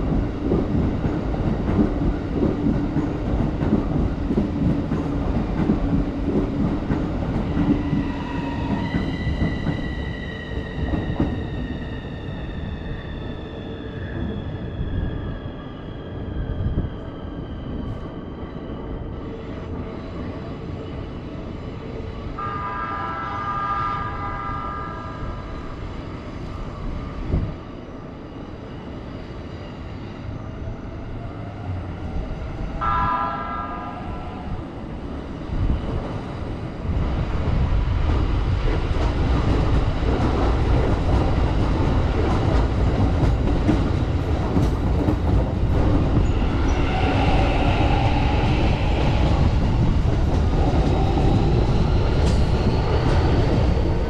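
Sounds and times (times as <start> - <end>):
train wheels rumbling on rails: 0.0 - 54.0
train horn blast: 22.4 - 25.6, 32.8 - 34.5.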